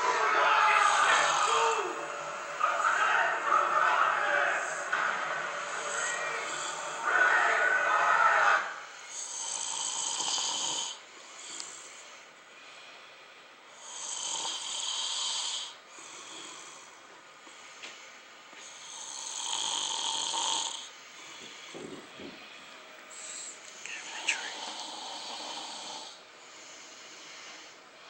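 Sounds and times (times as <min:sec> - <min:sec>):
person snoring: 0:00.7 - 0:02.5, 0:09.1 - 0:11.9, 0:18.8 - 0:20.9, 0:23.2 - 0:26.2
quiet breathing: 0:10.6 - 0:14.2, 0:15.6 - 0:19.3, 0:20.1 - 0:28.0.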